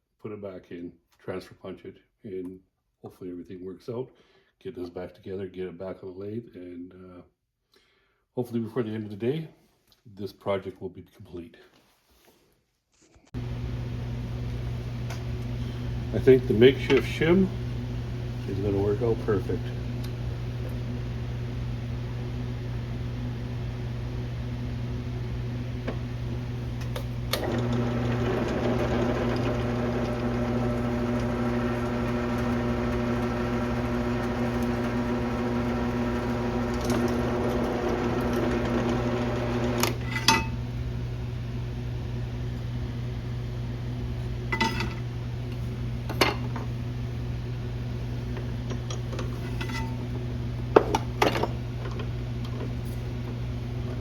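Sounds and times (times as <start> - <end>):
low shop hum: 12.9 - 54.0
electric drill motor running: 27.4 - 40.0.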